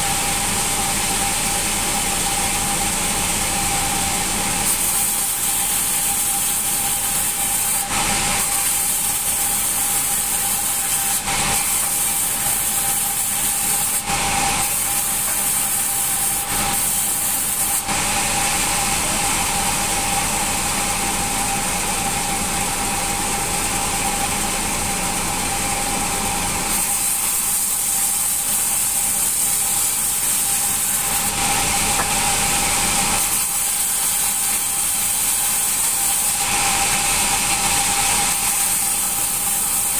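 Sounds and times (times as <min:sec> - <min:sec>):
band saw cutting wood: 0:03.6 - 0:19.0, 0:26.0 - 0:39.9.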